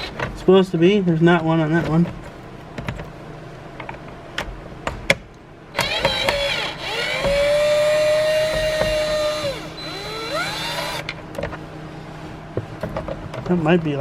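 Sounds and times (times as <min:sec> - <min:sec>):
cordless power driver motor: 0:05.8 - 0:11.2.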